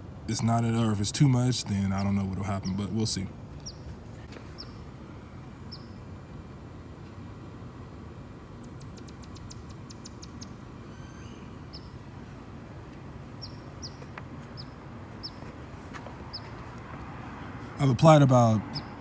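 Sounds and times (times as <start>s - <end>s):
steady low rumble: 0.0s - 19.0s
small bird calling: 3.6s - 4.9s, 5.6s - 6.1s, 8.6s - 12.1s, 13.4s - 15.6s, 16.2s - 16.6s, 18.7s - 19.0s.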